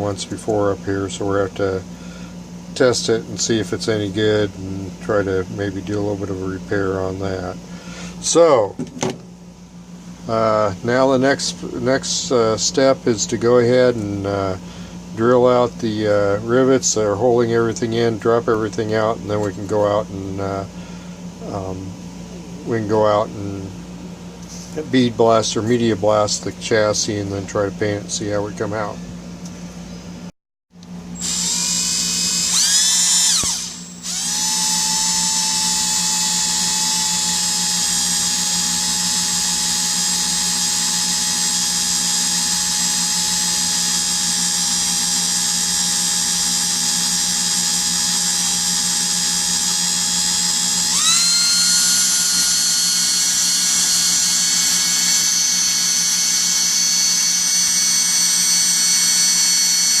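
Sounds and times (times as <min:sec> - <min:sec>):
electric drill whining: 0:31.2 - 1:00.0.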